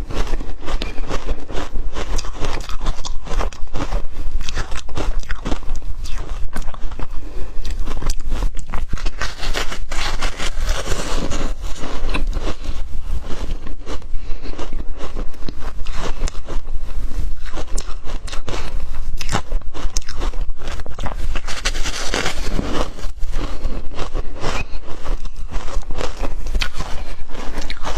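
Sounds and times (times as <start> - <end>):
ice being chewed: 0.0 - 27.9.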